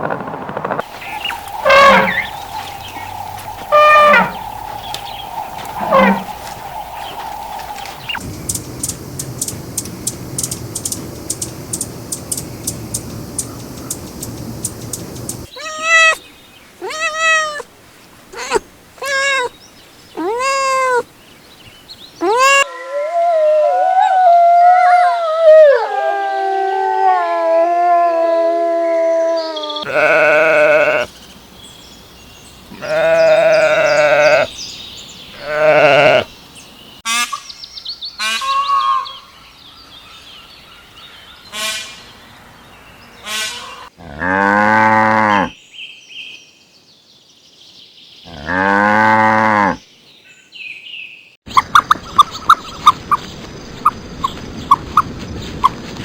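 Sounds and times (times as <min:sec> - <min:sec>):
dogs howling: 0:00.9 - 0:08.2, 0:16.8 - 0:17.6, 0:18.4 - 0:19.5, 0:20.2 - 0:21.0, 0:22.2 - 0:31.0
animal calling short cries: 0:01.0 - 0:04.4, 0:05.8 - 0:06.3, 0:15.5 - 0:16.2, 0:16.8 - 0:17.7, 0:18.4 - 0:19.5, 0:20.2 - 0:21.0, 0:22.2 - 0:22.7, 0:29.9 - 0:31.1, 0:32.7 - 0:34.5, 0:35.4 - 0:36.2.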